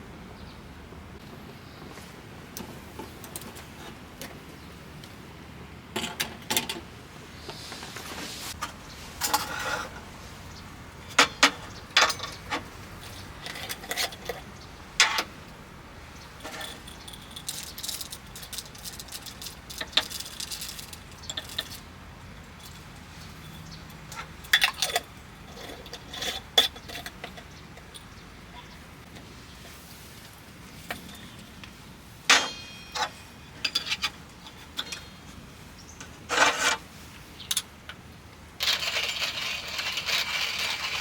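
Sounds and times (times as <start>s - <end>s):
small hard objects clinking: 16.2s - 28.2s, 38.6s - 41.0s.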